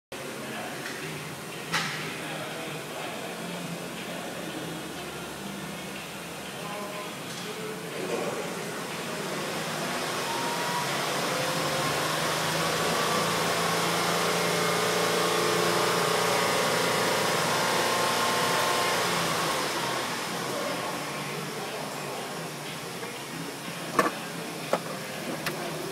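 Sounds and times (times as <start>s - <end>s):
car engine revving: 8.9s - 22.6s.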